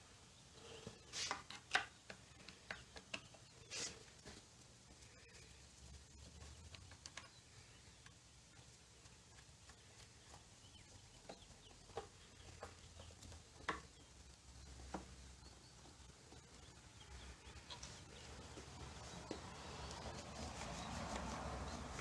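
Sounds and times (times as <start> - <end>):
small parts clicking and tapping: 6.5 - 8.6.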